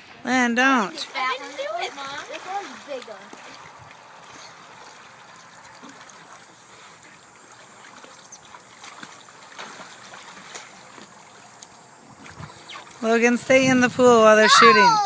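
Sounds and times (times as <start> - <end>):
water trickling: 0.4 - 15.0.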